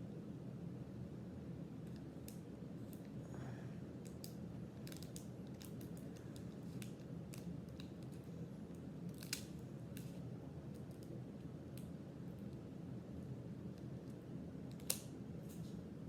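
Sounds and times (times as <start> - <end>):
low steady hum: 0.0 - 16.0
cards clicking and snapping: 14.7 - 15.6.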